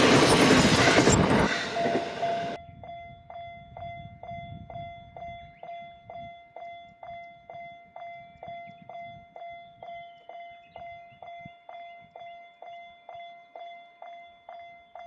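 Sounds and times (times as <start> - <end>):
passing train rumble: 0.0 - 5.5
railroad crossing bell ringing: 0.0 - 15.0.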